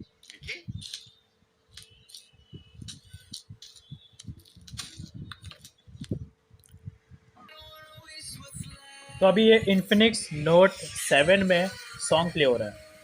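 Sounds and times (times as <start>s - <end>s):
song from phone speaker: 7.4s - 13.0s.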